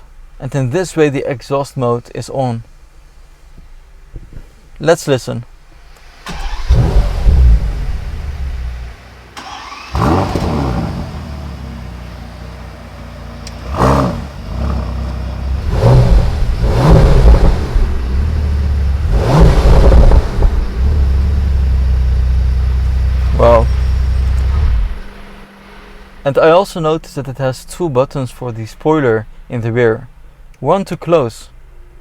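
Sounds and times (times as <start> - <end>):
car engine starting and idling: 5.5 - 30.6
engine throttle blips: 5.8 - 28.6.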